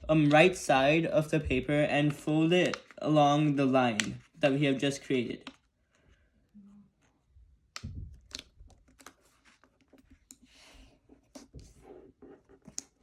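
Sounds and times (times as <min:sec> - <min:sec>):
paper being folded: 0:00.1 - 0:06.2, 0:08.2 - 0:10.5.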